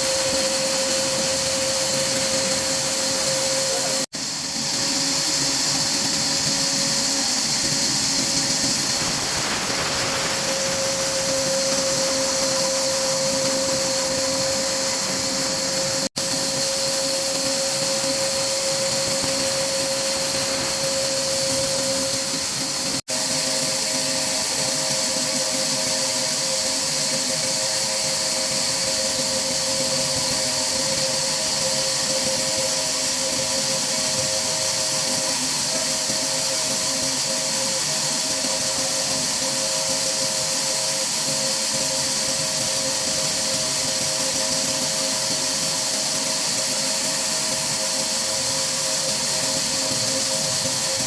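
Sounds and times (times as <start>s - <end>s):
higher machine whine: 0.0s - 4.1s, 4.9s - 23.0s
woodworking machine hiss and whine: 0.0s - 51.0s.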